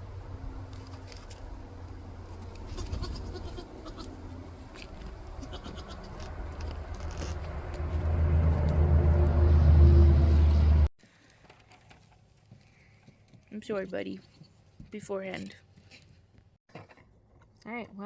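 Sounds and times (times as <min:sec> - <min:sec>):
goats bleating: 0:02.7 - 0:04.2, 0:05.4 - 0:06.2
rustling: 0:04.0 - 0:08.1
low rumble: 0:04.3 - 0:10.9.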